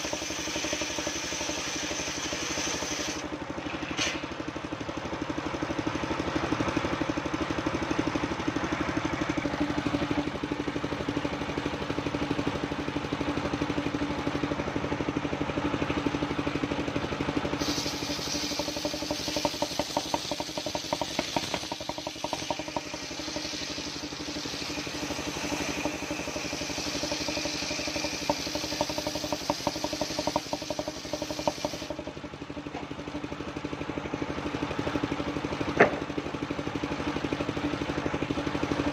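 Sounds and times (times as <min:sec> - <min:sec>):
saw blade hissing through wood: 0:00.0 - 0:03.3, 0:17.5 - 0:32.0
sawmill engine running: 0:00.0 - 0:38.9.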